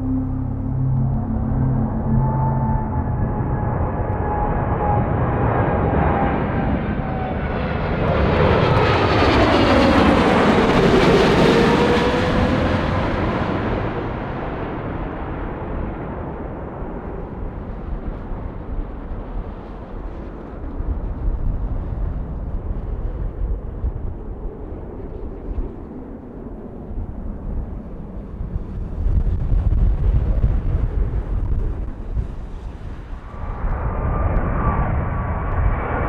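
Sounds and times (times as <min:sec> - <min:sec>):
passing whine: 0:00.0 - 0:14.4
jet engines rumbling: 0:00.0 - 0:36.0
wind buffeting microphone: 0:16.9 - 0:36.0.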